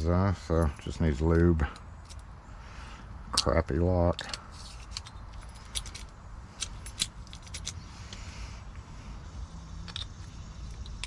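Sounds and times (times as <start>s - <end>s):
low steady hum: 0.0s - 11.0s
metallic clicks of lock parts: 0.6s - 2.3s, 3.3s - 8.3s, 9.8s - 11.0s.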